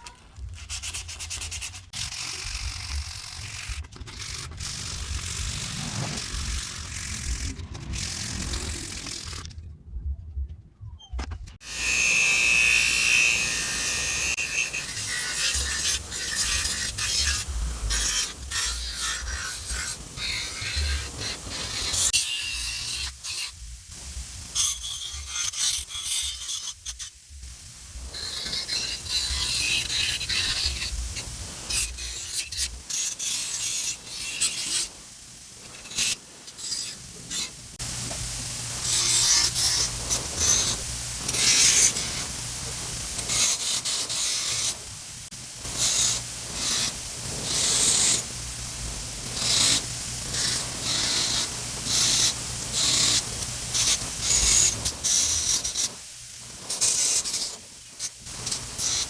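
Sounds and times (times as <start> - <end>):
abrasive scrubbing on rusty steel: 11.6 - 23.6, 24.4 - 59.0.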